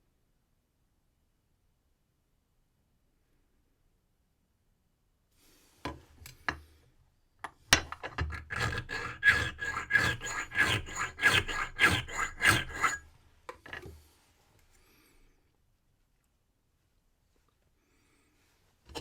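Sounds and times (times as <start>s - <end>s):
file rasping on brass key: 7.8s - 13.0s.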